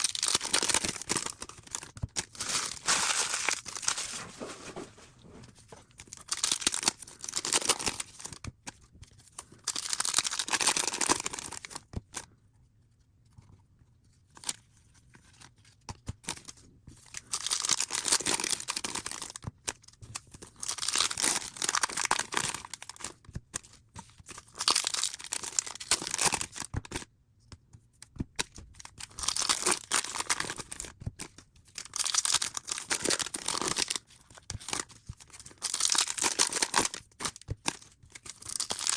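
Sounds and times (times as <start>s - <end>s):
wrappers tearing and crinkling: 0.0s - 5.1s, 6.1s - 8.3s, 9.7s - 11.8s, 17.2s - 19.3s, 20.6s - 23.1s, 24.5s - 26.6s, 29.0s - 30.9s, 31.8s - 34.0s, 35.4s - 38.9s.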